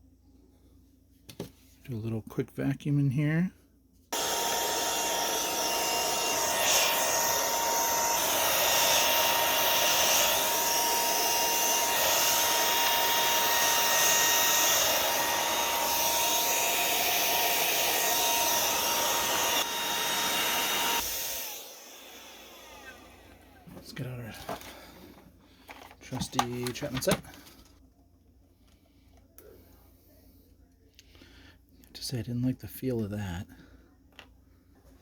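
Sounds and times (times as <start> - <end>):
small vacuum cleaner running: 4.2 - 27.4.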